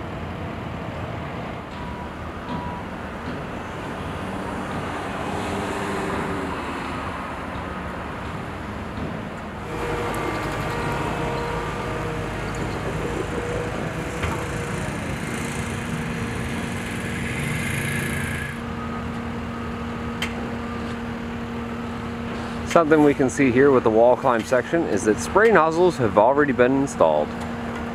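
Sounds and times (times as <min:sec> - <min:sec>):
engines running: 0:01.5 - 0:27.9.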